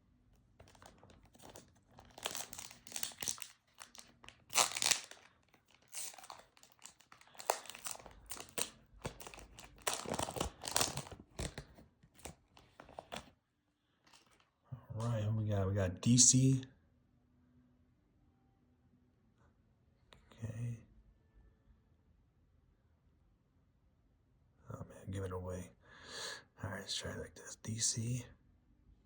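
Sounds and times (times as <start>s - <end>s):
wrapper tearing and crinkling: 0.6s - 13.2s.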